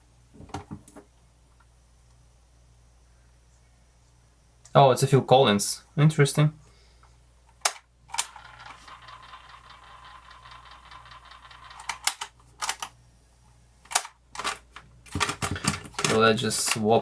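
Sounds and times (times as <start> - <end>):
cassette tape playing slow: 7.0 - 14.2.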